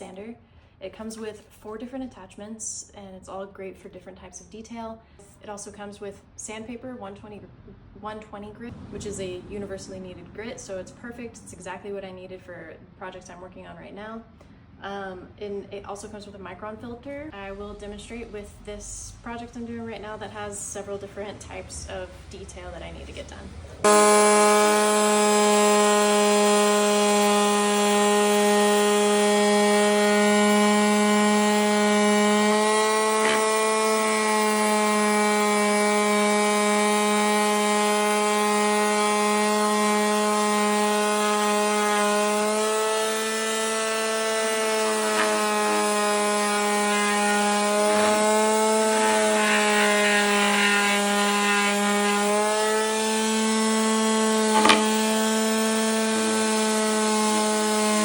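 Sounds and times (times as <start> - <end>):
electric sander sanding wood: 23.8 - 58.0.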